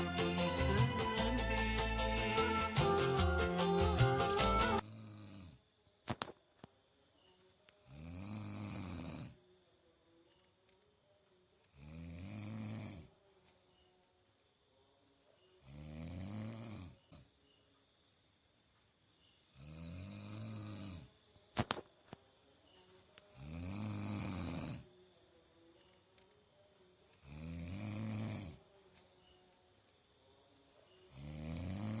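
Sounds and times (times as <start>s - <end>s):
person snoring: 0.0s - 5.7s, 7.8s - 9.4s, 11.7s - 13.2s, 15.6s - 17.2s, 19.6s - 21.1s, 23.3s - 25.0s, 27.2s - 28.6s, 31.1s - 32.0s.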